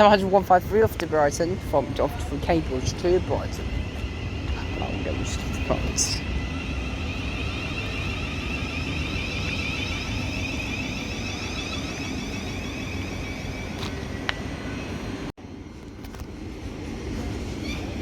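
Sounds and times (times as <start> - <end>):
electric train rumble: 0.0 - 18.0
train traction whine: 0.0 - 18.0.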